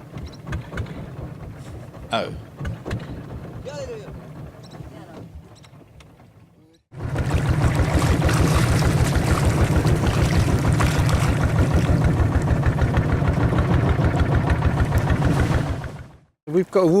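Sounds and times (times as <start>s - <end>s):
boat engine chugging: 0.0s - 17.0s
water wash: 7.0s - 17.0s.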